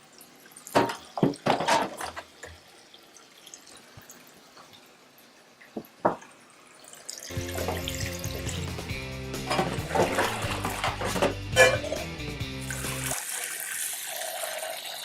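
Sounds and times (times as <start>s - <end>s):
water splashing and dripping: 7.1s - 8.7s, 9.4s - 11.4s, 12.6s - 13.5s.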